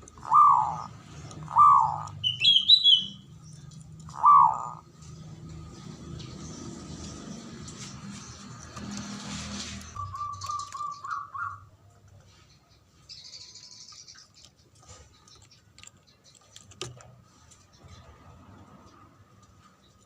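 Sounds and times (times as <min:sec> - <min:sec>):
dove cooing: 0:00.0 - 0:03.0, 0:04.1 - 0:04.8, 0:10.0 - 0:11.7.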